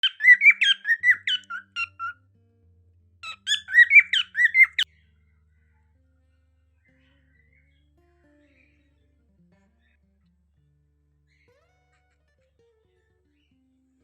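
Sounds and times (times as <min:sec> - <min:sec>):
cockatiel chirping: 0:00.0 - 0:02.1, 0:03.2 - 0:04.9
faint background music: 0:00.0 - 0:14.0.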